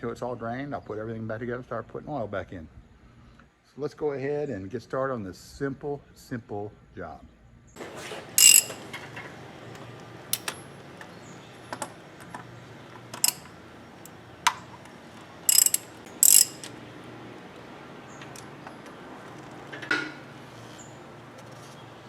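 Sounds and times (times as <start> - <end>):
ratchet wrench ratcheting: 8.4 - 8.8, 13.2 - 14.2, 15.5 - 16.8
sharp metal clicks: 8.4 - 8.8, 9.7 - 10.6, 11.7 - 16.8.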